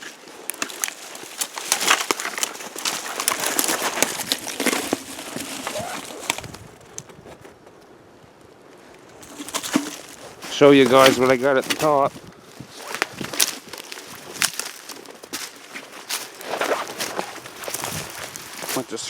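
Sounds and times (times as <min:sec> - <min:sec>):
twigs snapping and clicking: 0:00.0 - 0:07.1, 0:09.0 - 0:18.9
brush crackling and rustling: 0:00.0 - 0:19.0.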